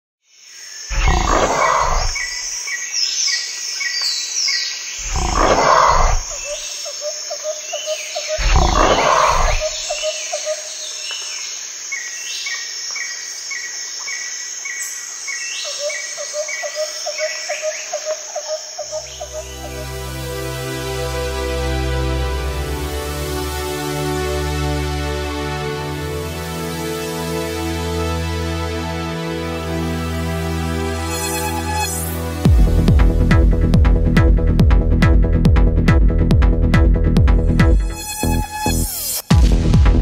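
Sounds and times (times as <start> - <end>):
birds chirping: 0.8 - 20.3
big cat roaring: 0.9 - 2.3, 5.0 - 6.5, 8.4 - 9.8.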